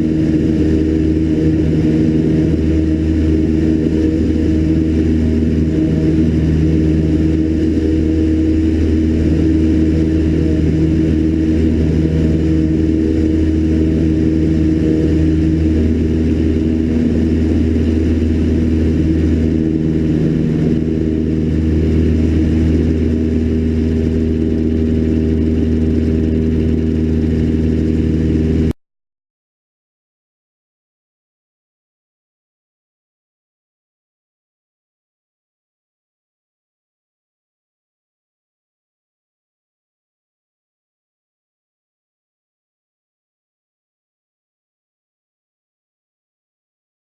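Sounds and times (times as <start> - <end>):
airplane engine and propeller droning: 0.0 - 28.8.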